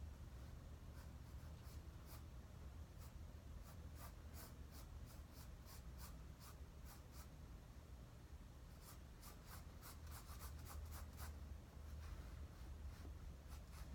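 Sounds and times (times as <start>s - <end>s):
steady low hum: 0.0s - 13.9s
pencil scratching on paper: 0.9s - 2.3s, 3.0s - 7.3s, 8.7s - 13.9s.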